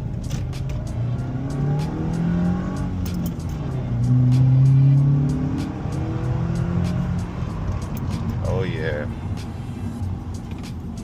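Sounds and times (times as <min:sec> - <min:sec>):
car engine accelerating: 0:00.0 - 0:08.5.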